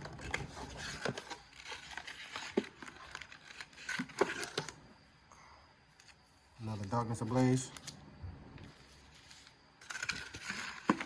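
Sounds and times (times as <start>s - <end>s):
foil wrappers crinkling: 0.0s - 4.8s, 8.9s - 11.0s.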